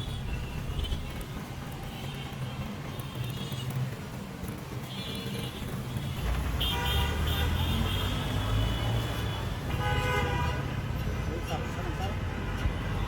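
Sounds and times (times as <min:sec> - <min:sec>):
road traffic: 0:00.0 - 0:13.0
vehicle horn honking: 0:06.6 - 0:10.7.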